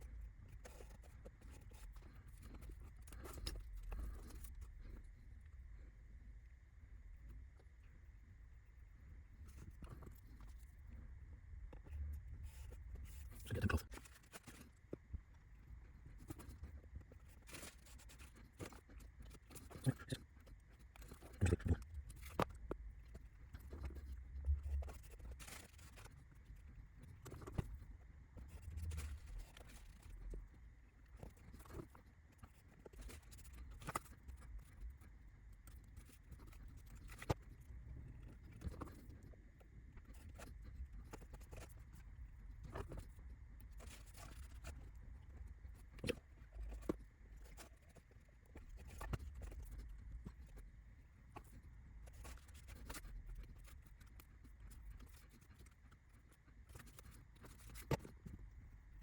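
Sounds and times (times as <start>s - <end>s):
low hum: 1.7s - 13.9s, 21.3s - 26.7s.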